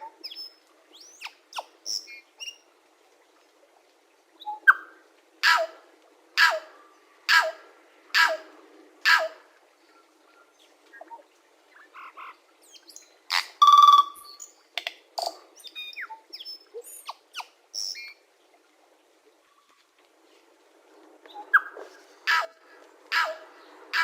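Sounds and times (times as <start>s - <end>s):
bird singing: 15.6s - 18.2s.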